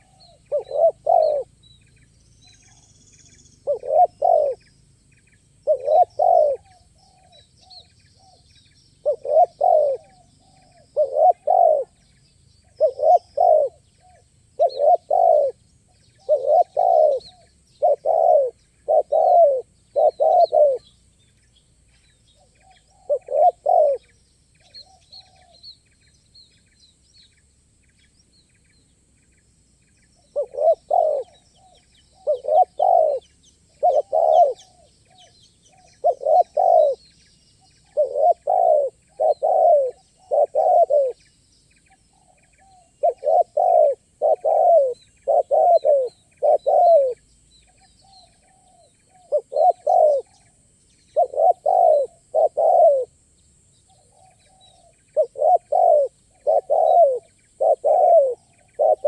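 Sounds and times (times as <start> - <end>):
doves cooing: 0.0 - 1.6, 3.6 - 4.6, 5.6 - 7.4, 9.0 - 12.0, 12.8 - 13.8, 14.6 - 15.6, 16.2 - 20.8, 22.7 - 24.0, 30.3 - 34.9, 35.8 - 37.0, 37.9 - 41.2, 42.2 - 47.2, 48.2 - 50.4, 51.2 - 53.1, 54.0 - 59.0
faint small bird chirps: 0.0 - 59.0.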